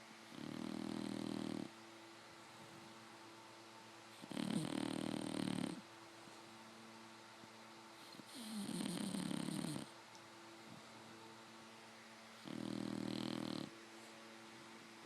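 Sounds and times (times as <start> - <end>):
puppy snoring: 0.3 - 1.8, 4.1 - 5.9, 8.0 - 10.0, 12.4 - 13.8.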